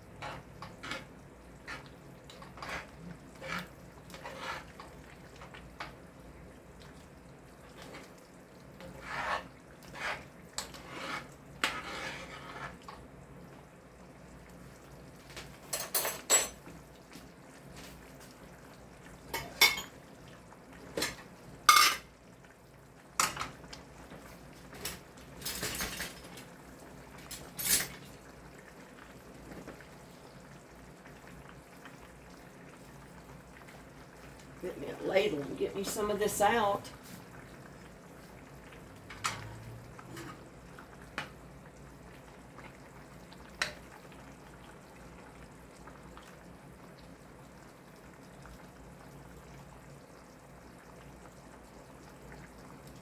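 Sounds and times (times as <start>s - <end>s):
metal utensil scraping a pot: 0.2s - 4.9s, 8.8s - 12.9s.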